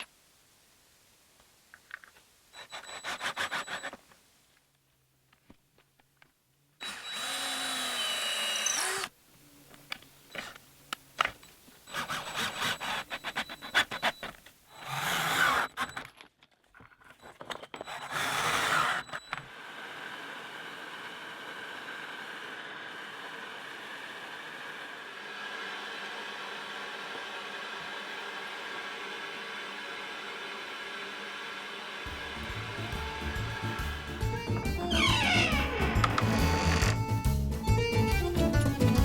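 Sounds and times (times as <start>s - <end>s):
power tool running: 6.8s - 9.1s, 14.7s - 16.0s, 17.8s - 37.2s.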